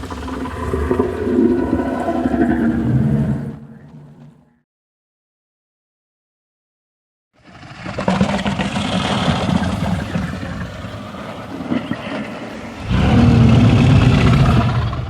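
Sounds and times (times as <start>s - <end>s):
low growling creature: 12.6s - 15.0s.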